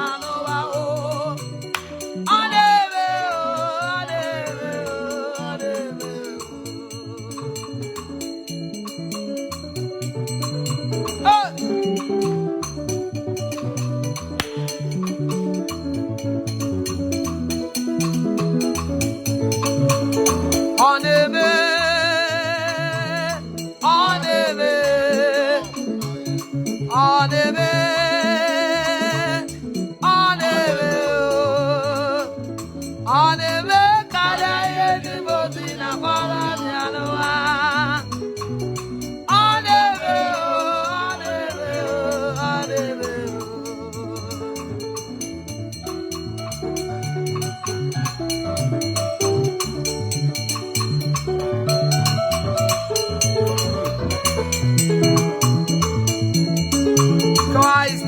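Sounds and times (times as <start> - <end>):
person singing with vibrato: 0.0 - 8.0, 11.2 - 12.0, 20.8 - 45.1, 57.5 - 58.0
instrumental backing music: 0.0 - 58.0.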